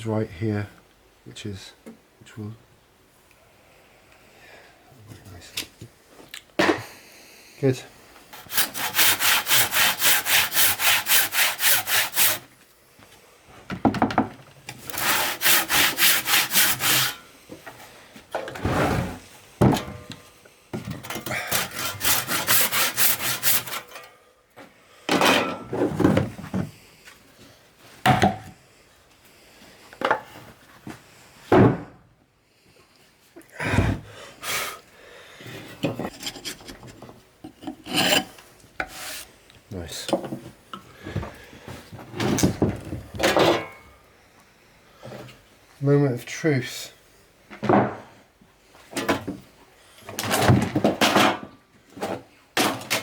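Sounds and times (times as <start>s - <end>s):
handsaw cutting timber: 8.4s - 12.5s, 14.8s - 17.3s, 21.3s - 24.0s
wood knocks and scrapes: 25.1s - 26.7s, 35.5s - 39.2s.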